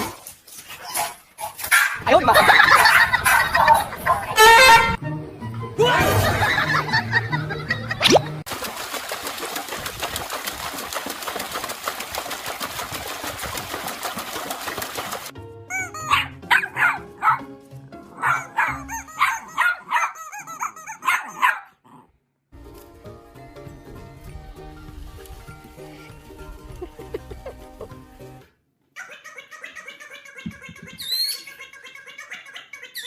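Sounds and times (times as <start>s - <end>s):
background music: 3.2s - 8.4s, 15.3s - 20.0s, 22.6s - 28.5s
animal calls rising and falling: 15.7s - 17.0s.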